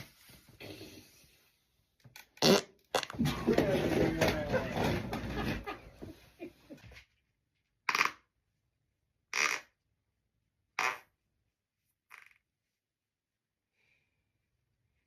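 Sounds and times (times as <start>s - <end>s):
rasping fart: 2.4s - 5.7s, 7.9s - 8.3s, 9.3s - 9.8s, 10.8s - 11.2s, 12.1s - 12.4s.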